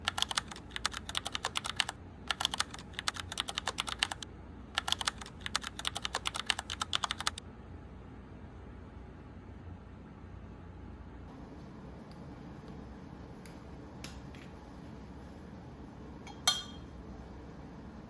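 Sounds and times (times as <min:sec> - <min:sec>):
keyboard typing: 0:00.0 - 0:04.2, 0:04.8 - 0:07.4.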